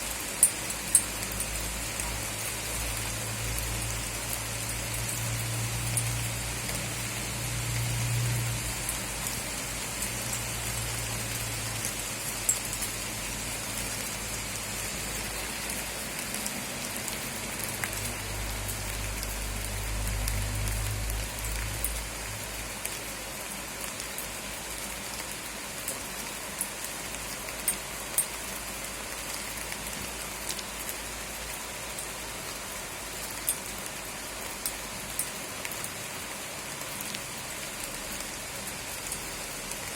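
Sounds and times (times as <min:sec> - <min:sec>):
steady rain falling: 0:00.0 - 0:39.9
sharp drip ticks: 0:00.1 - 0:23.0, 0:33.2 - 0:36.0, 0:37.0 - 0:39.9.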